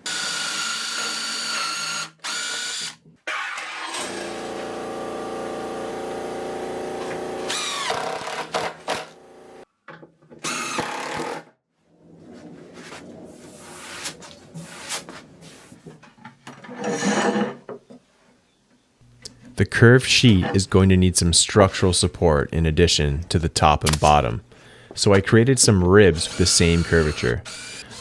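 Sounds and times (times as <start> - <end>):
power drill driving screws: 0.0 - 9.3, 10.4 - 11.4, 26.2 - 28.0
clicks: 19.1 - 20.6, 23.6 - 24.5.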